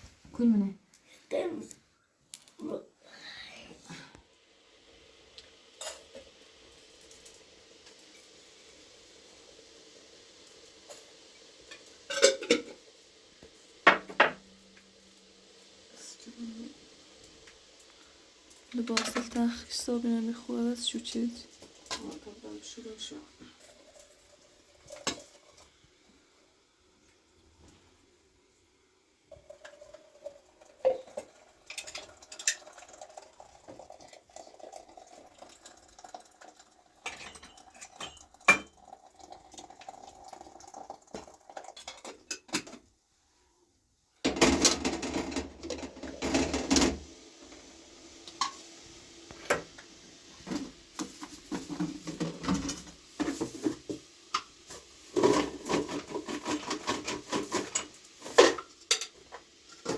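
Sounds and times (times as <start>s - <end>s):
dishes and pots clinking: 5.8s - 6.3s, 11.7s - 12.8s, 13.8s - 14.5s, 30.8s - 33.0s, 37.0s - 39.0s, 41.1s - 42.8s, 44.2s - 47.0s, 50.5s - 54.5s, 55.1s - 59.9s.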